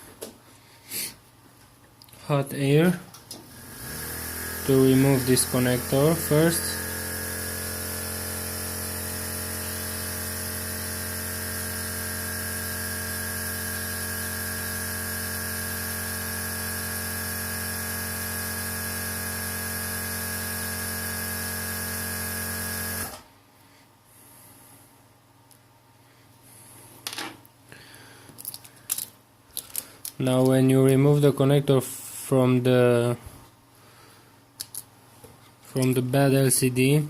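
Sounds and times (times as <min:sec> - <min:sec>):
hot air blower whirring: 0:03.5 - 0:23.3.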